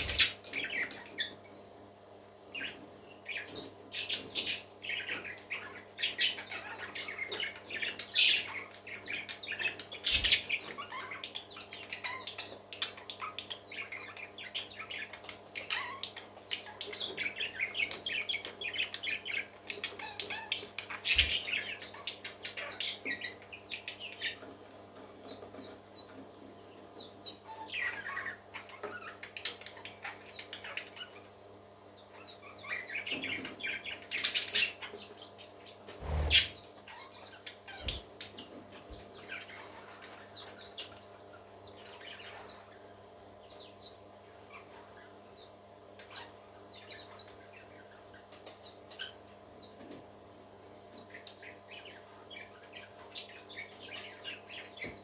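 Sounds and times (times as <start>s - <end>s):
parrots chirping: 18.7s - 23.4s, 36.0s - 38.1s.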